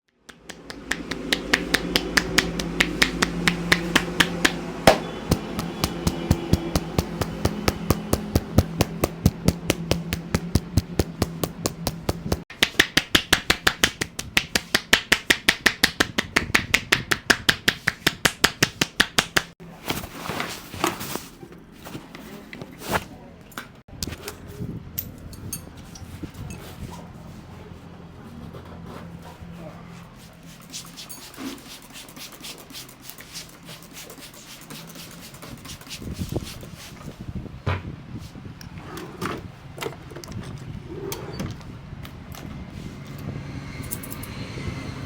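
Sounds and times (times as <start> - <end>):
hands slapping a head: 0.3 - 19.6.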